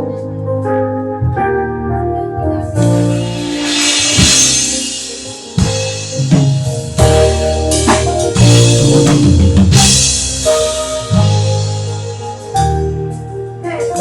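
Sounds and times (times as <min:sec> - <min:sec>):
bass line: 0:00.0 - 0:14.0
sustained keyboard chords: 0:00.0 - 0:14.0
drum kit hits: 0:02.8 - 0:13.1.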